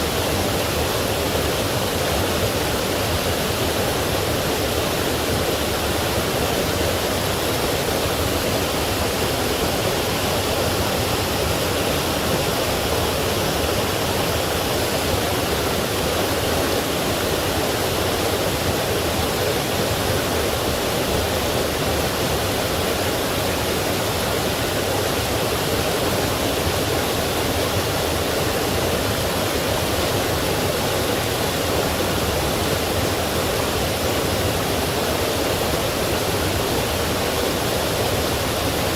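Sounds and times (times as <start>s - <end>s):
stream rushing over rocks: 0.0s - 38.9s.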